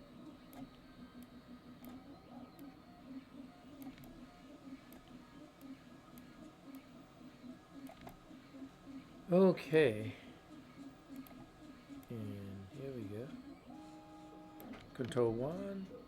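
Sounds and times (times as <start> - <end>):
faint computer mouse clicks: 0.4 - 6.9, 7.8 - 8.2, 11.0 - 12.1.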